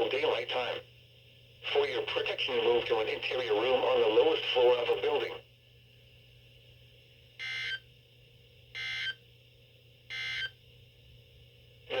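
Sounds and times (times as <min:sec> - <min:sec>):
faint steady receiver hum: 0:00.0 - 0:06.7.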